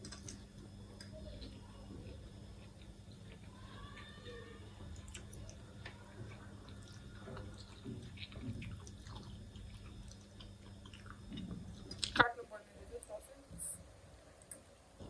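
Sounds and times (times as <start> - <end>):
steady low hum: 0.0 - 15.0
wet chewing and mouth noises: 4.8 - 12.3.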